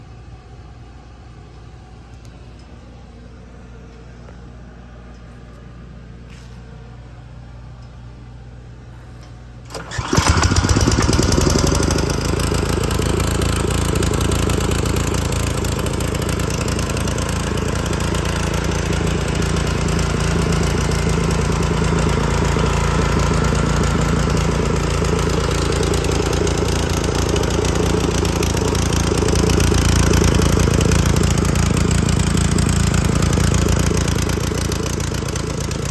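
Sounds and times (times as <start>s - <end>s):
pressure washer engine running: 9.7s - 35.9s.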